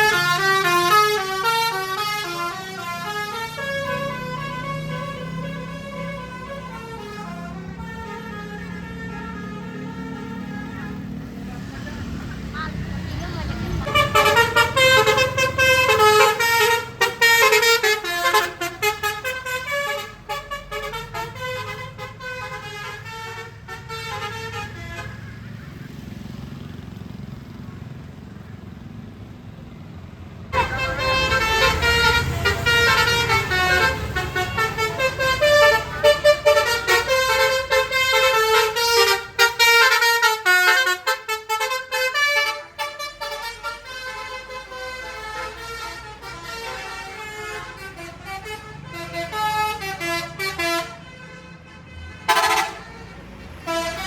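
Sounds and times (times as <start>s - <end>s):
bus horn playing melodic notes: 0.0s - 11.6s, 13.5s - 25.9s, 30.5s - 54.0s
road traffic rumble: 0.0s - 54.0s.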